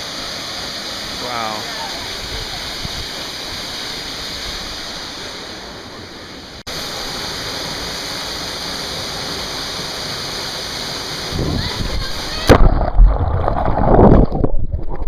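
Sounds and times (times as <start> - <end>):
waterfall roaring: 0.0 - 12.6.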